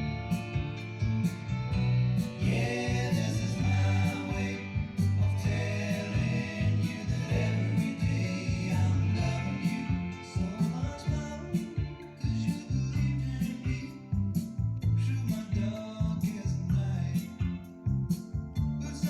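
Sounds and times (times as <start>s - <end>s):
steady drum beat: 0.0s - 18.8s
sustained bass notes: 0.0s - 19.0s
person singing: 2.4s - 14.0s.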